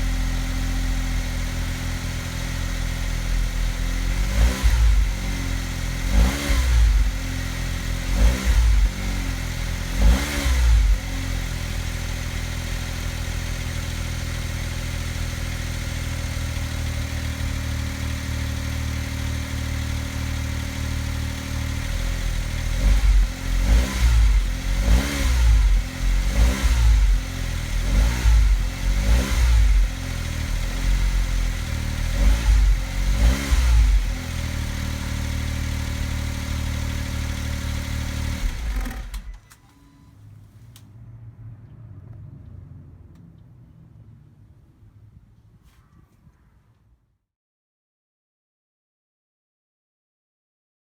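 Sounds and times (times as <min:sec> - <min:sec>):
car engine revving and idling: 0:00.0 - 0:39.5.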